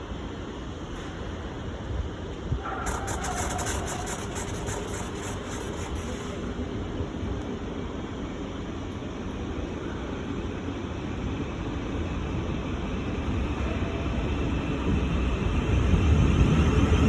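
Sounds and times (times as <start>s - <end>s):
train rumbling: 11.7s - 17.0s.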